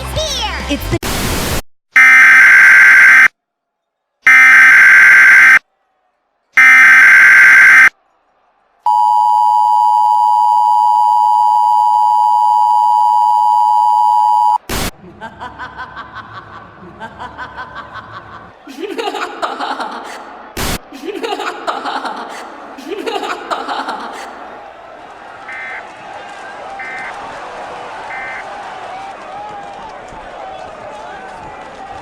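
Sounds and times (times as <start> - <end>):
blips of noise: 2.0 - 3.3, 4.3 - 5.6, 6.6 - 7.9, 8.9 - 14.9
data bursts: 2.0 - 3.3, 4.3 - 5.6, 6.6 - 7.9, 8.9 - 14.9
two-tone attention signal: 2.0 - 3.3, 4.3 - 5.6, 6.6 - 7.9, 8.9 - 14.6.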